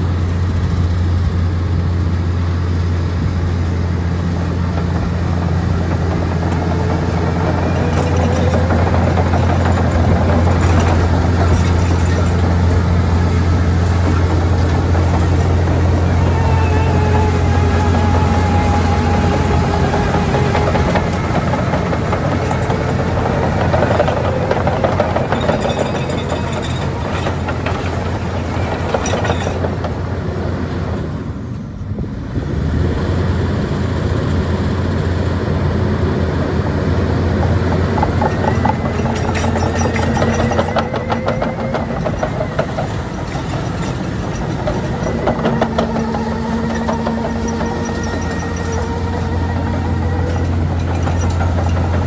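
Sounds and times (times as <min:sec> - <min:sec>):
diesel engine running: 0:00.0 - 0:52.0
wavering whining tone: 0:04.0 - 0:29.6, 0:37.9 - 0:52.0.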